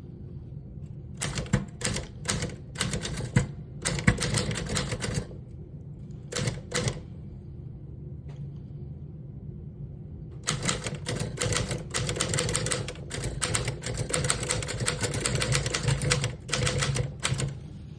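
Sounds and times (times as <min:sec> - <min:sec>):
manual typewriter typing: 0:01.2 - 0:05.3, 0:06.3 - 0:07.0, 0:10.4 - 0:17.6.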